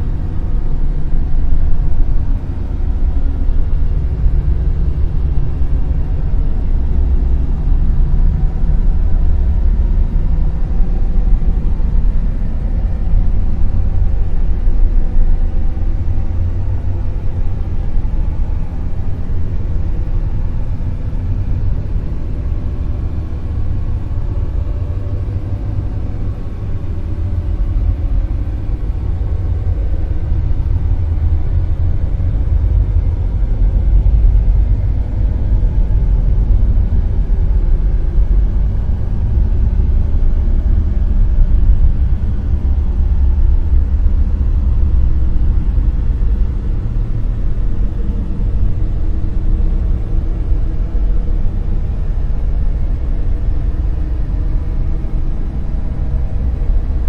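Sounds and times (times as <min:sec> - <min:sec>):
deep rumbling hiss: 0:00.0 - 0:57.0.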